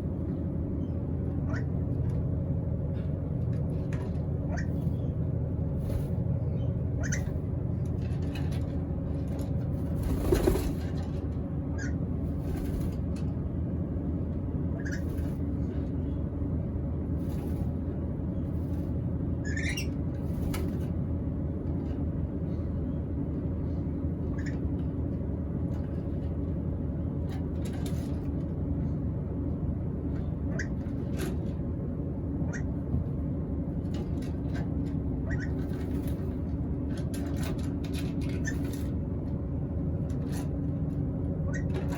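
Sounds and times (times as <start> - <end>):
low background hum: 0.0 - 41.9
bird squealing: 4.4 - 5.1, 6.5 - 7.5, 11.7 - 12.0, 14.8 - 15.2, 19.4 - 20.0, 24.3 - 24.6, 32.4 - 32.8, 35.2 - 35.6, 41.5 - 41.8.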